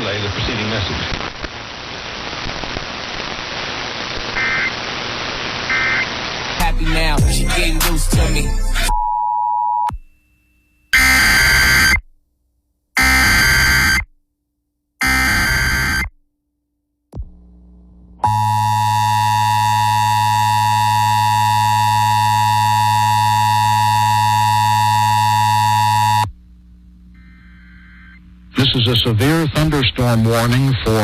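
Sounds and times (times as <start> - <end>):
screeching digital data tones: 11.0 - 12.0, 15.0 - 16.1
two-tone attention signal: 18.2 - 26.3.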